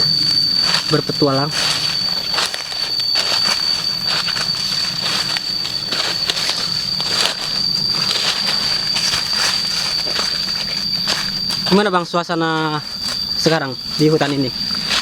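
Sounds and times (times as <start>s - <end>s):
cicadas droning: 0.0s - 15.0s
footsteps crunching: 0.0s - 15.0s.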